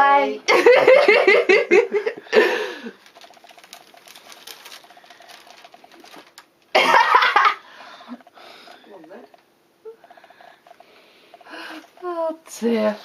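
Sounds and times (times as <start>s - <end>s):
bag rustling and crinkling: 2.8s - 6.5s.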